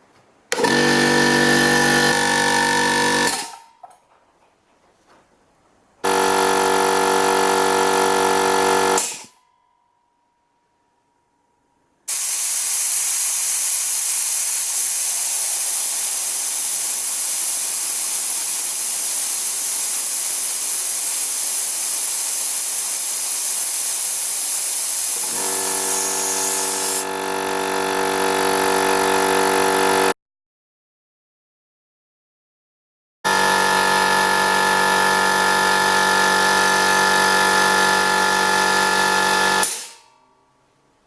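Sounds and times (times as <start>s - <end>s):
pitched motor drone: 0.6s - 3.4s, 6.1s - 9.0s, 25.2s - 30.1s, 33.3s - 39.7s
compressor air hiss: 12.1s - 27.1s.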